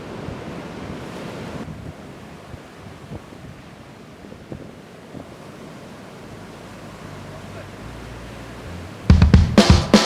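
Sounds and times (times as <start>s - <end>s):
surf washing on shore: 0.0s - 9.1s
wind buffeting microphone: 0.2s - 5.4s.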